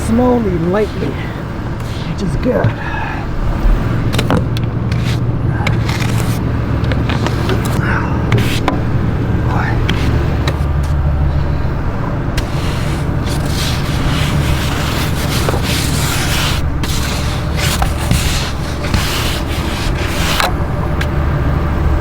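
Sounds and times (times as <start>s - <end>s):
snow and ice scraped off: 0.0s - 3.0s, 4.1s - 7.8s, 12.4s - 20.6s
truck engine idling: 0.0s - 22.0s.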